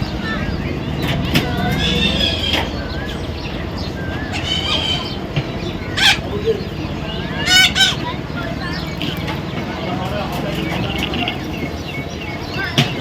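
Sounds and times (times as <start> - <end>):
parrot chirping and squawking: 4.1 - 9.3
parrot screeching: 4.3 - 5.2, 5.9 - 6.3, 7.4 - 8.1.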